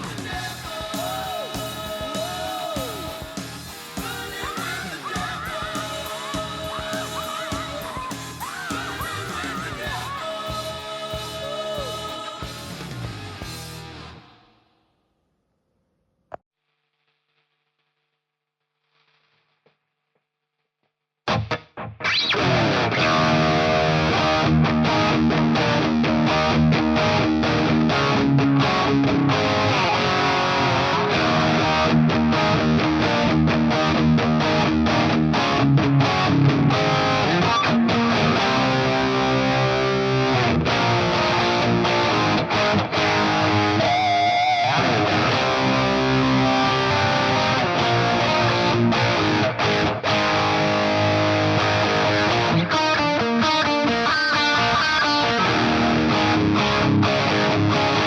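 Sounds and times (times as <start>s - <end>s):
distorted electric guitar riffs: 0.0s - 14.7s, 21.3s - 58.0s.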